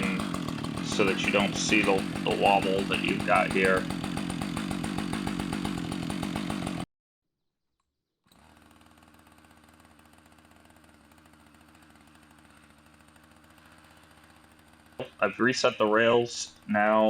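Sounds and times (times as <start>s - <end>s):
faint pulsing engine: 0.0s - 4.3s
chainsaw running: 0.0s - 6.8s, 8.3s - 17.0s.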